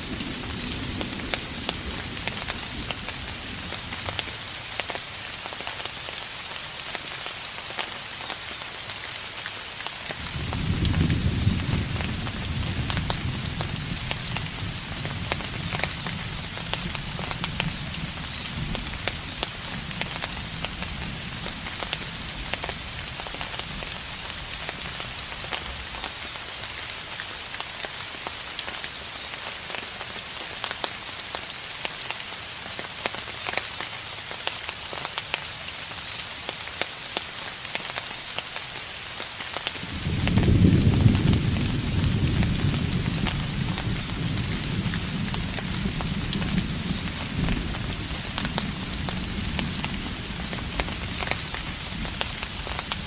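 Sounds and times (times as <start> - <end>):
rain drops ticking: 0.0 - 53.0
steady rain hissing: 0.0 - 53.0
thunder rumbling: 10.2 - 23.9, 39.8 - 53.0.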